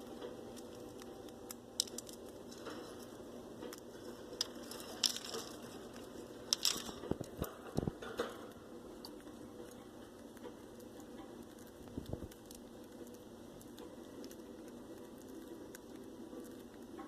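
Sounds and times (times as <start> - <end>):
birds pecking and cracking seed: 0.0 - 17.0.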